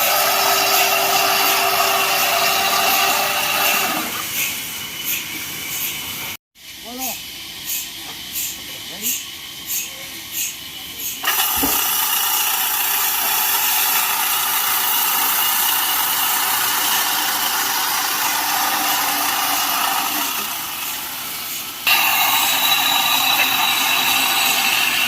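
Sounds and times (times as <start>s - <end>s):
saw cutting through wood: 0.0s - 4.5s, 10.4s - 25.0s.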